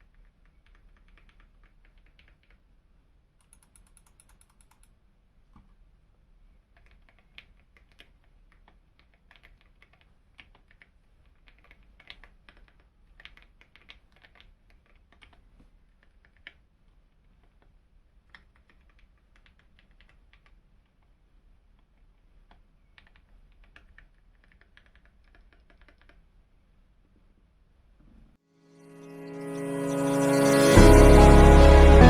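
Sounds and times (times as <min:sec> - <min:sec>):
typing on mechanical keyboard: 0:00.0 - 0:02.7, 0:03.4 - 0:04.9, 0:06.7 - 0:16.6, 0:17.4 - 0:21.2, 0:21.8 - 0:26.3.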